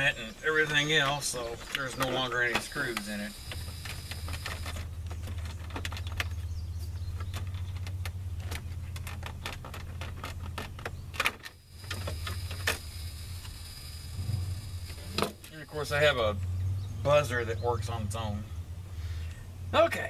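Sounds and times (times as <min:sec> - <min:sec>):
steady low hum: 0:00.0 - 0:20.0
plastic trim clicks and rattles: 0:01.5 - 0:12.8.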